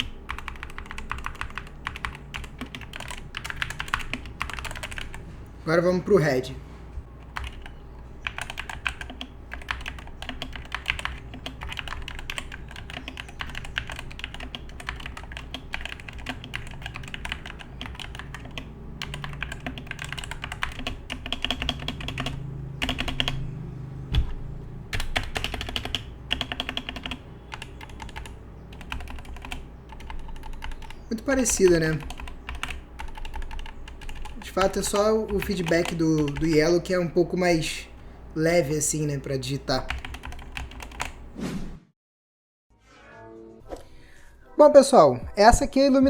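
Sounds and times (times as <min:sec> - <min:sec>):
mechanical keyboard typing: 0:00.0 - 0:05.2, 0:07.2 - 0:23.5, 0:24.1 - 0:37.1, 0:39.6 - 0:41.2.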